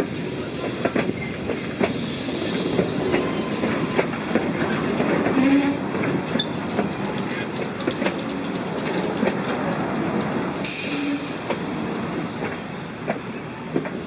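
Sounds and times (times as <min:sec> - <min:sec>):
high steam hiss: 0:00.0 - 0:03.1, 0:10.5 - 0:14.0
train wheels clicking over rail joints: 0:00.6 - 0:14.0.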